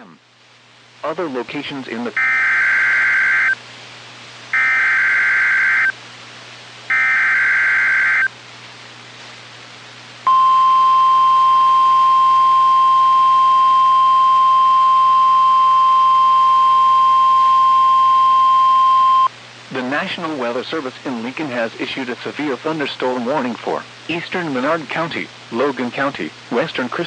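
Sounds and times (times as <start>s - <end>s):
digital data bursts: 2.2s - 3.6s
steady alarm tone: 2.2s - 3.6s, 4.6s - 5.9s, 6.9s - 8.3s, 10.3s - 19.3s.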